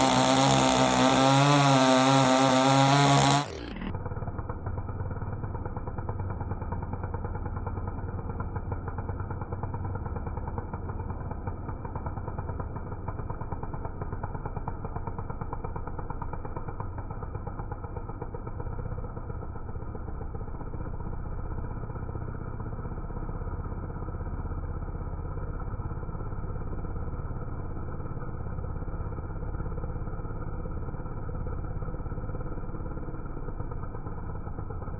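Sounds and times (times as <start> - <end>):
muffled chainsaw engine running: 0.0 - 34.9.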